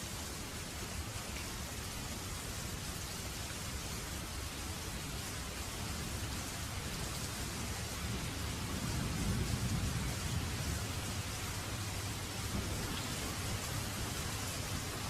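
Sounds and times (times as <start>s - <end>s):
steady rain falling: 0.0s - 15.0s
thunder rumbling: 7.8s - 15.0s.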